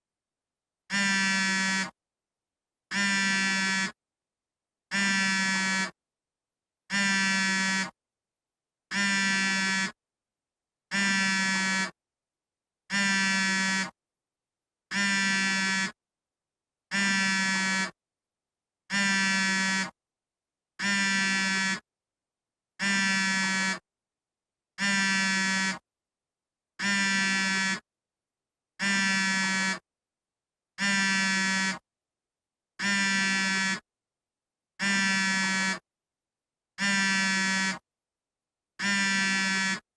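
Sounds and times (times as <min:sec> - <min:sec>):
phone vibrating buzz: 0:00.9 - 0:01.9, 0:02.9 - 0:04.0, 0:04.9 - 0:05.9, 0:06.9 - 0:08.0, 0:08.9 - 0:10.0, 0:10.9 - 0:11.9, 0:12.9 - 0:14.0, 0:14.9 - 0:15.9, 0:16.9 - 0:17.9, 0:18.9 - 0:20.0, 0:20.8 - 0:21.8, 0:22.8 - 0:23.8, 0:24.8 - 0:25.8, 0:26.8 - 0:27.8, 0:28.8 - 0:29.8, 0:30.8 - 0:31.8, 0:32.8 - 0:33.8, 0:34.8 - 0:35.8, 0:36.8 - 0:37.8, 0:38.8 - 0:39.9.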